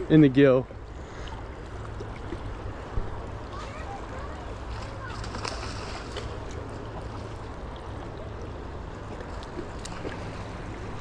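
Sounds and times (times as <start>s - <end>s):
river water rushing: 0.0s - 11.0s.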